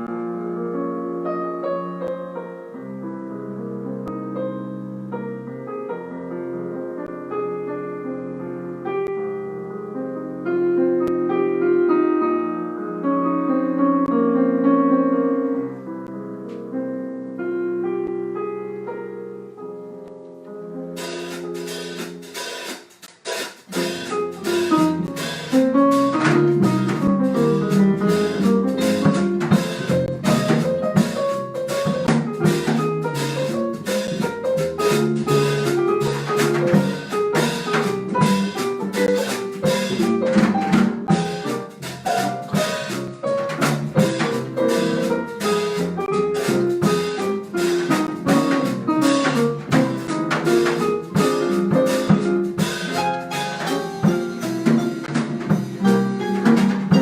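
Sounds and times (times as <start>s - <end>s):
drum kit beat: 21.0s - 57.0s.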